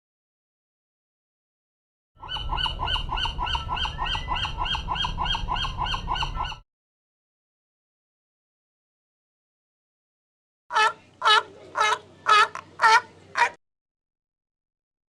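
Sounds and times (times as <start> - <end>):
animal calling rapidly: 10.7 - 13.6.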